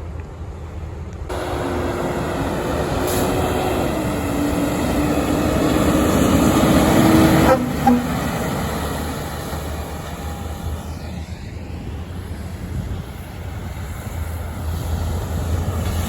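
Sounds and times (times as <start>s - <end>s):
fire truck air horn: 5.9s - 9.1s.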